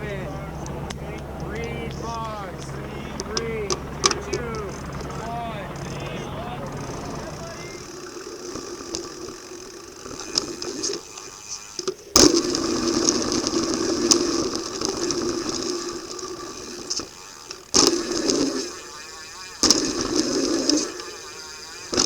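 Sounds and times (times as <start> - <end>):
bike rattling over dirt and rock: 0.0 - 22.0
freehub ratchet clicking: 6.6 - 22.0.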